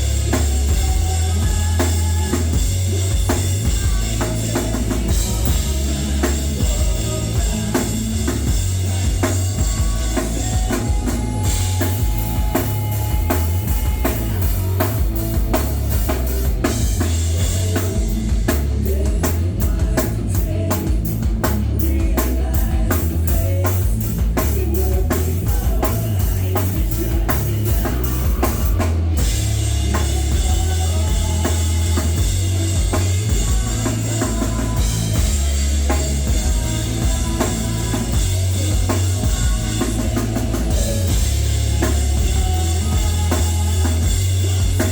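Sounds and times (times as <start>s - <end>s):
drum kit strokes: 0.0s - 44.9s
live rock band playing: 0.0s - 44.9s.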